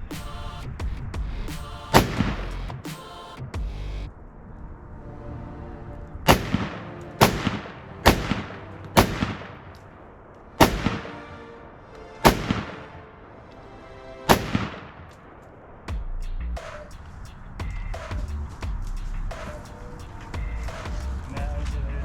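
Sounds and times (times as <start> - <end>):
rifle shots echoing: 1.9 - 2.5, 6.3 - 13.4, 14.3 - 15.9.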